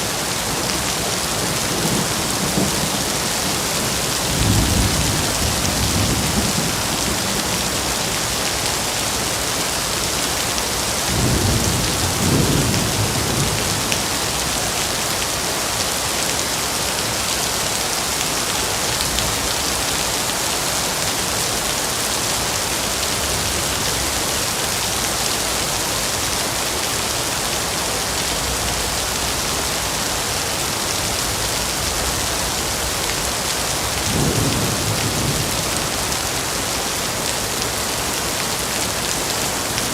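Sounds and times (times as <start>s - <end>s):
heavy rain in forest: 0.0s - 39.9s
thunder rumbling: 1.5s - 7.7s, 34.0s - 36.9s.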